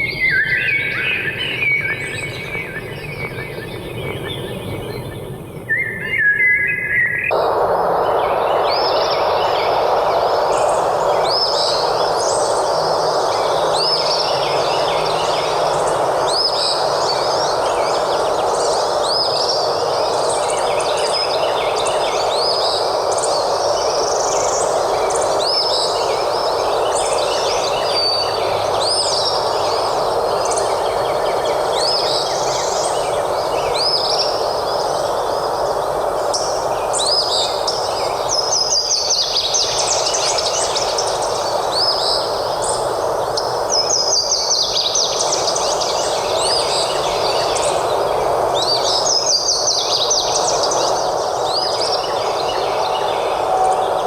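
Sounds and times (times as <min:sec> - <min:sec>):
steady rushing background noise: 0:07.3 - 0:54.0.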